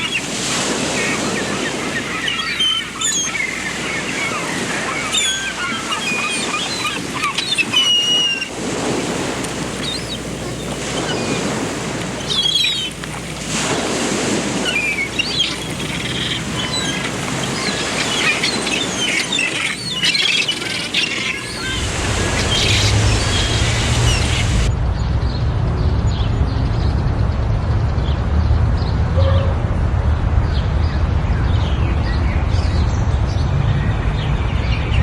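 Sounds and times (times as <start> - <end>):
rushing background noise: 0.0 - 35.0
small birds chirping and whistling: 1.0 - 8.5, 9.8 - 10.3, 12.2 - 13.0, 14.6 - 24.7
low rumble: 22.9 - 34.5.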